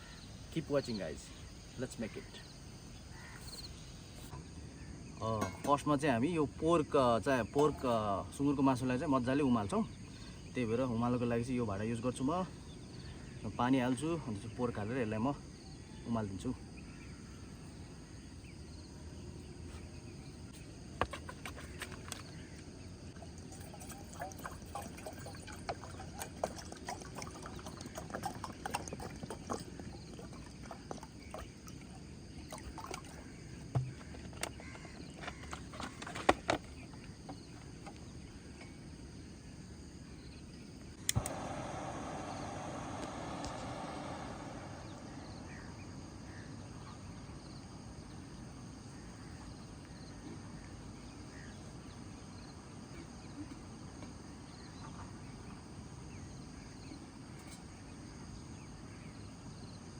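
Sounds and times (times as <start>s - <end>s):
water pouring into a pot: 23.2s - 33.3s
handling clicks and knocks: 32.9s - 38.7s.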